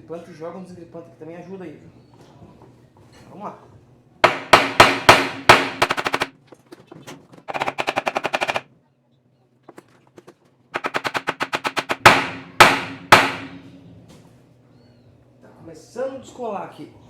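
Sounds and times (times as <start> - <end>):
rapid hammer taps on metal: 4.2 - 6.3, 7.5 - 8.6, 10.8 - 13.6.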